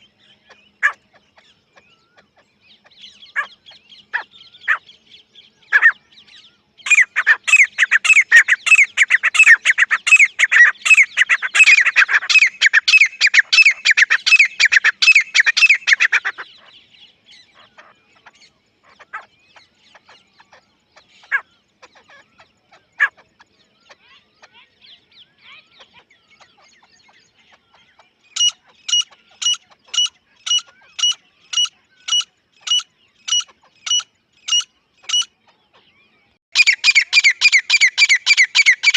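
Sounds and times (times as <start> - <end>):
francolin calling: 0.0 - 38.9.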